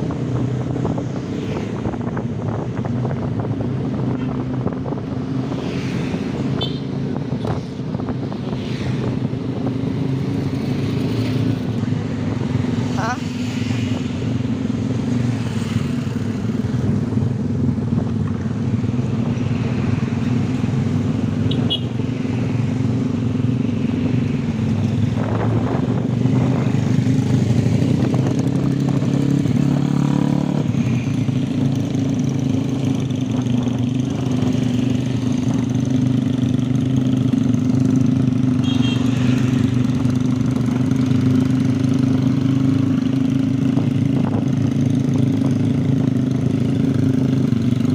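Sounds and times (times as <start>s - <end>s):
motorcycle engine running: 22.8s - 47.9s.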